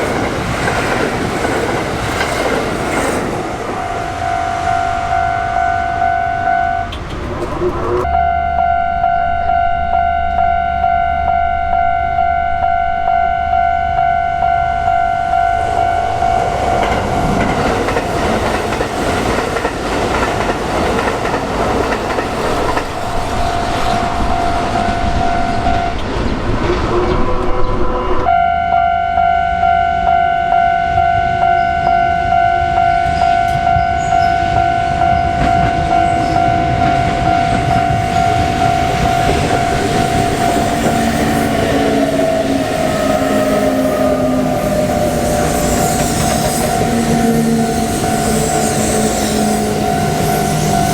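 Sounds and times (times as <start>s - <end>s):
train wheels clattering on rails: 0.0s - 4.7s, 5.7s - 8.1s, 16.1s - 27.6s, 32.8s - 50.9s
level crossing warning bell: 3.4s - 26.1s, 28.3s - 50.9s.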